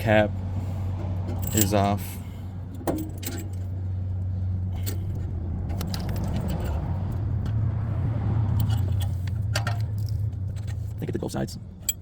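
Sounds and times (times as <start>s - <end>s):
metallic clicks and scrapes of tool: 8.5s - 11.0s.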